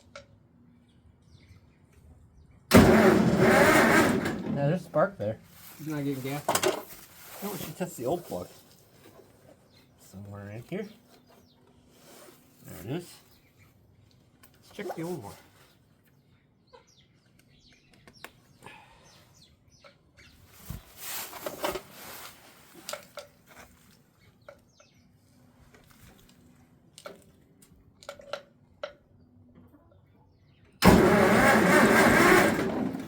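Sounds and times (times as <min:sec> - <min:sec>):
tractor engine cranking on starter: 0:02.7 - 0:04.8, 0:30.8 - 0:33.0.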